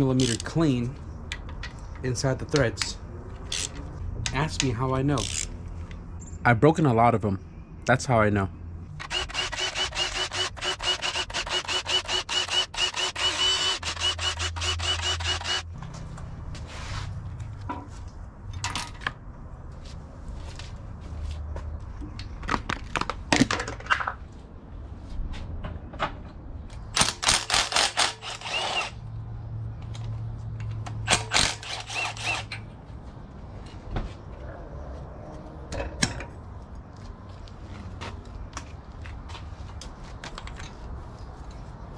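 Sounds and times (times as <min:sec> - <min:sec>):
power wrench rattling: 0:03.4 - 0:03.8, 0:09.0 - 0:15.7, 0:27.0 - 0:29.0, 0:31.1 - 0:32.6.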